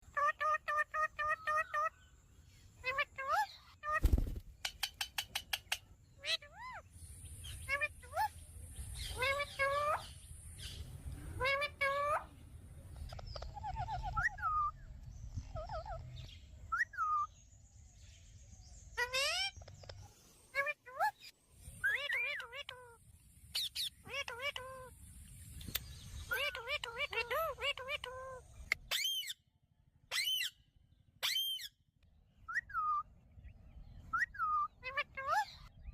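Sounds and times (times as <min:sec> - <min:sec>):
parrot trilling and chirping: 0:00.1 - 0:17.4, 0:18.7 - 0:35.9
parrot whistled calls: 0:13.4 - 0:14.8, 0:16.7 - 0:17.3, 0:20.6 - 0:22.5, 0:28.8 - 0:29.4, 0:30.1 - 0:30.6, 0:31.2 - 0:31.8, 0:32.5 - 0:33.1, 0:34.1 - 0:35.5.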